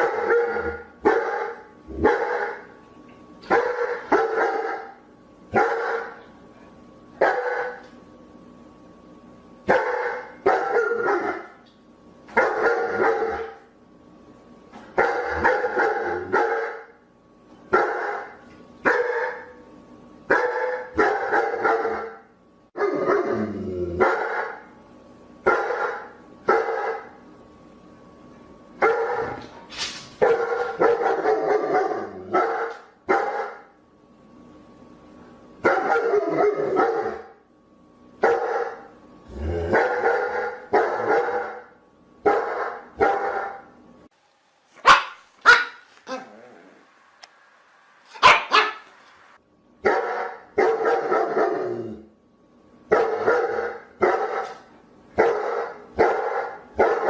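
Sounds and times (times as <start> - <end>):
dogs barking deeply: 0.0 - 2.7, 22.8 - 24.7, 39.4 - 41.6, 48.2 - 48.9, 55.2 - 57.0
short sharp barks: 48.2 - 48.9.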